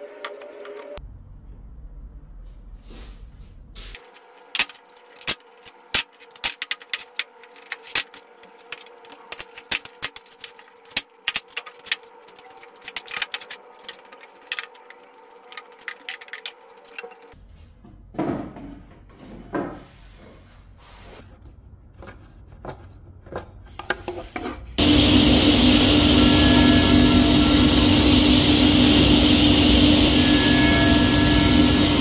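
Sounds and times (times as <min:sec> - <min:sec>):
low rumble: 0:01.0 - 0:03.9
steady hum: 0:24.8 - 0:32.0.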